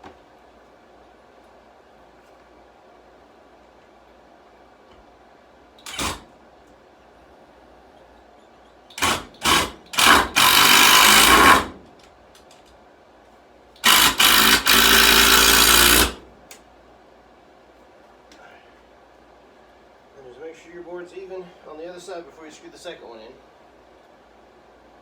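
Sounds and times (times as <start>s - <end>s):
impact drill driving screws: 5.8s - 6.3s, 8.9s - 11.8s, 13.8s - 16.2s.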